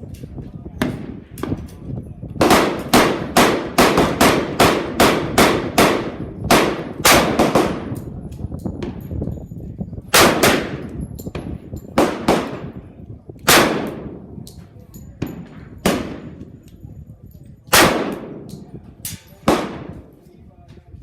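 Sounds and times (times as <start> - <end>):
pistol shots: 2.4 - 8.1, 10.1 - 11.0, 12.0 - 12.8, 13.4 - 14.3, 15.2 - 16.4, 17.7 - 20.2.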